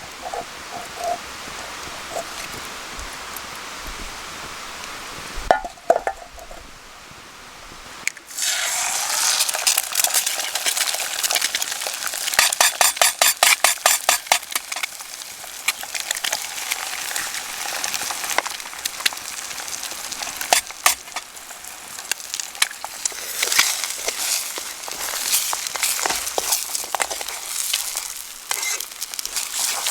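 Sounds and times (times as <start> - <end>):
fire crackling: 7.7 - 29.9
food sizzling in a pan: 8.3 - 29.9.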